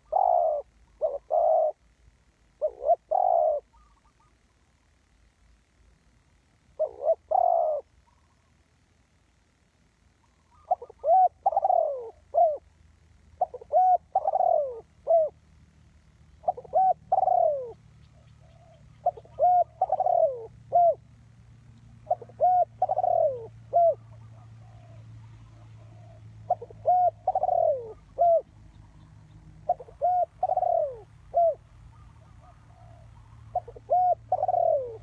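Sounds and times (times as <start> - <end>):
dove cooing: 0.0 - 4.5, 6.7 - 8.5, 10.2 - 15.5, 16.2 - 35.0.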